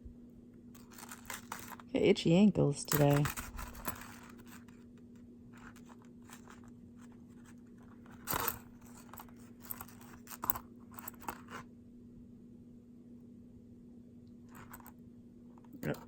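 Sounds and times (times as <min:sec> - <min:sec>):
steady low hum: 0:00.0 - 0:16.0
rustling clatter: 0:00.7 - 0:01.9, 0:02.8 - 0:11.7, 0:14.5 - 0:15.0
jewelry clicking and clinking: 0:00.8 - 0:01.8, 0:02.8 - 0:04.7, 0:08.1 - 0:11.6, 0:14.5 - 0:14.9.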